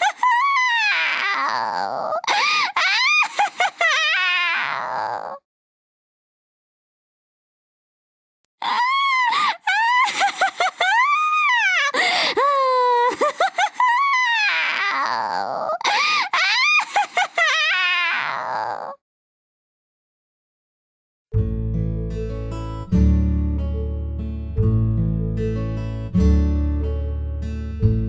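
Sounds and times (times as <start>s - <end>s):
shrill cackling laugh: 9.7s - 11.9s, 13.1s - 14.4s.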